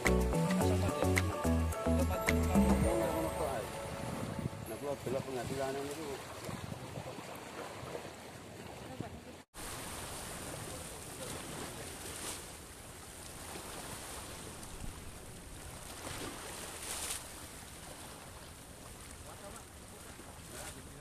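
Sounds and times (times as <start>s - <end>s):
sea waves: 0.0s - 21.0s
wind noise: 2.7s - 7.2s.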